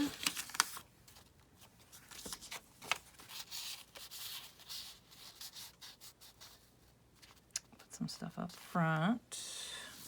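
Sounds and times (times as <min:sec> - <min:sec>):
paper rustling and sliding: 0:00.0 - 0:06.6.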